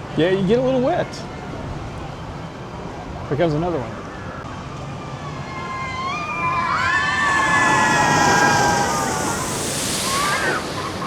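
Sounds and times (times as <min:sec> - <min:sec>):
riders screaming: 0:05.3 - 0:11.0
water splashing: 0:07.1 - 0:11.0.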